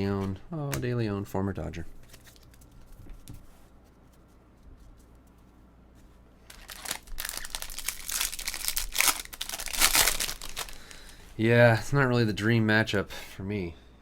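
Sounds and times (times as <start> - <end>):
plastic wrapper crinkling and tearing: 6.5 - 11.2.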